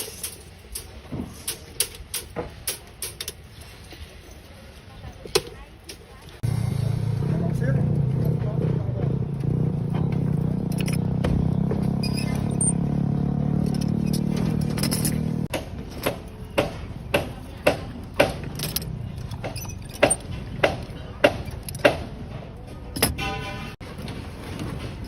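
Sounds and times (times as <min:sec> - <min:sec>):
engine-like hum: 0:06.4 - 0:15.6.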